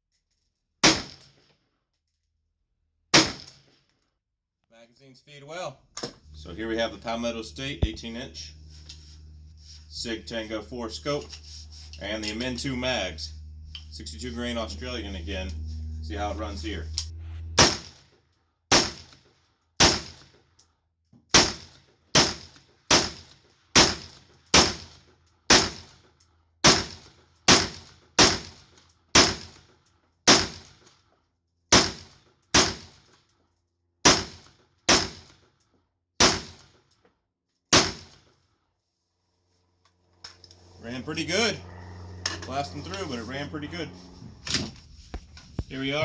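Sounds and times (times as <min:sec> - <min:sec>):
rifle firing semi-automatic: 0:36.2 - 0:36.6.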